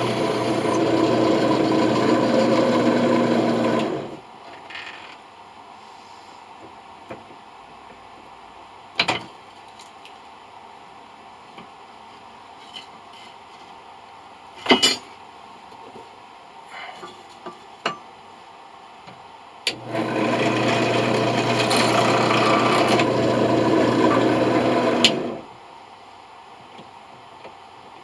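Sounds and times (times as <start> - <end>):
power drill drilling into metal: 0.0 - 4.2, 19.7 - 25.4.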